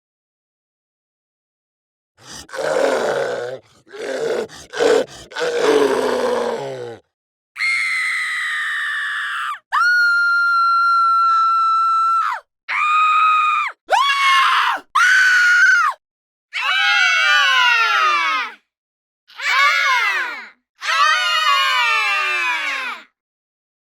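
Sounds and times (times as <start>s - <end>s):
zombie growls and groans: 2.2s - 7.1s
woman screaming: 7.6s - 16.0s.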